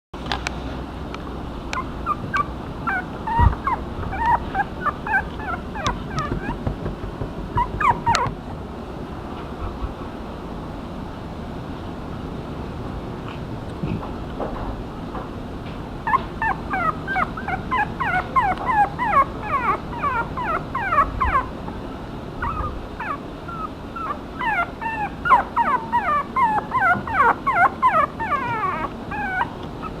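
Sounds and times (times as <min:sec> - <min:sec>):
puppy yipping and whimpering: 0:01.7 - 0:08.6, 0:16.0 - 0:21.6, 0:22.4 - 0:30.0.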